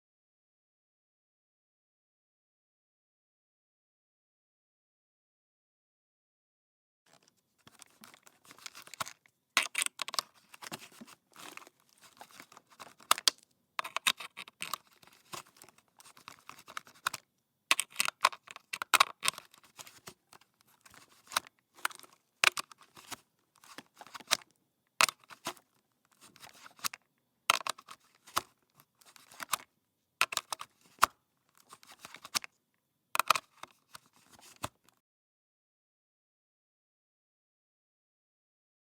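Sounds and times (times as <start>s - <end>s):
plug and cord rattling: 7.1s - 25.6s, 26.2s - 32.5s, 33.2s - 34.7s.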